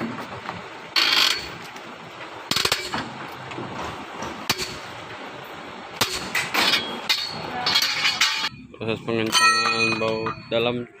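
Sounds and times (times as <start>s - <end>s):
metal tools knocking on wheel nuts: 6.0s - 8.6s, 9.2s - 10.7s.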